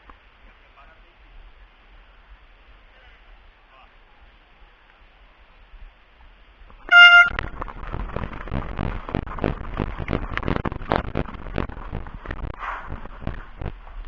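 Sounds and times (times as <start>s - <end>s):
horn blast: 6.9s - 7.5s.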